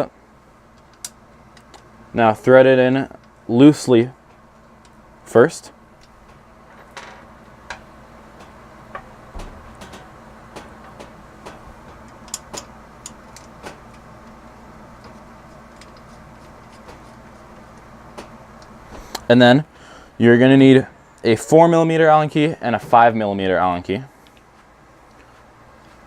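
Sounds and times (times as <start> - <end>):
faint steady hum: 0.0 - 26.0.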